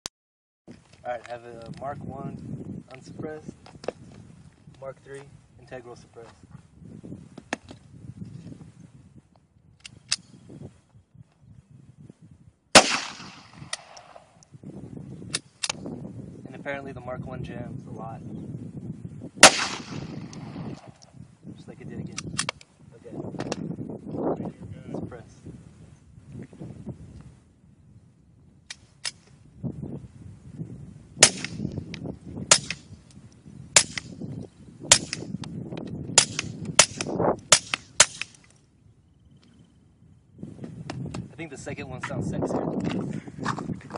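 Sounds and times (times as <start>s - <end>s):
pistol shot with echo: 12.8s - 14.4s, 19.4s - 21.0s, 31.2s - 31.6s, 32.5s - 32.8s, 34.9s - 35.3s.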